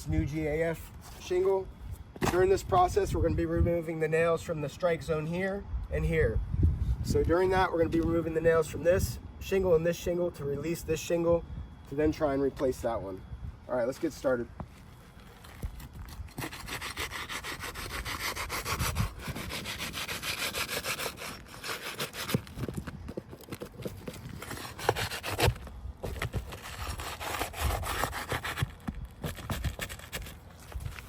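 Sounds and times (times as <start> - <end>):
tool scraping under roof shingles: 14.7 - 31.0.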